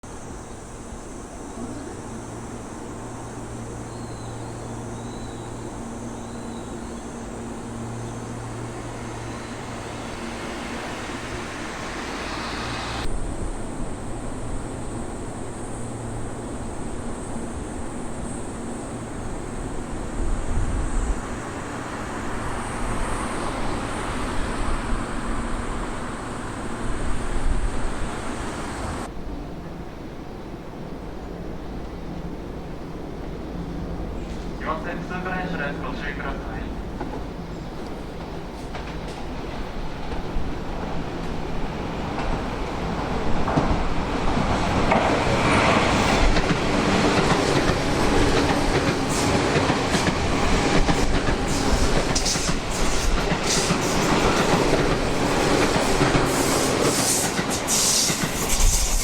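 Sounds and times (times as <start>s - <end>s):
electric train rumble: 0.0s - 59.0s
wheel-on-rail noise: 36.7s - 59.0s.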